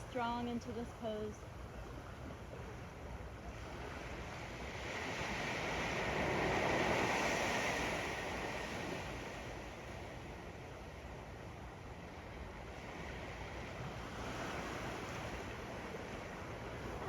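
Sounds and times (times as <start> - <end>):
ocean waves on sand beach: 0.0 - 17.0.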